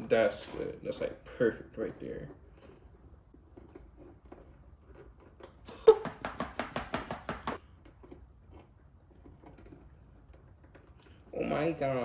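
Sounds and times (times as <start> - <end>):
rapid sharp taps: 6.0 - 7.6.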